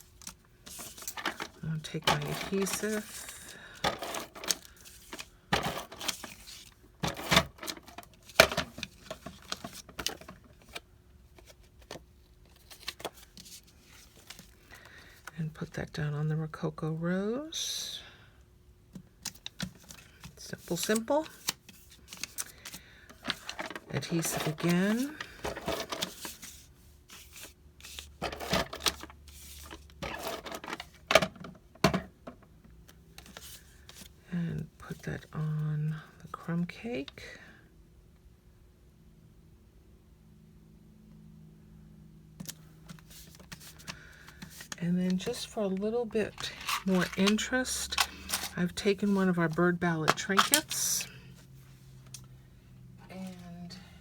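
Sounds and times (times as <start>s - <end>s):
card stock rustling scrapes: 0.0s - 10.8s, 19.8s - 30.8s, 46.3s - 49.6s.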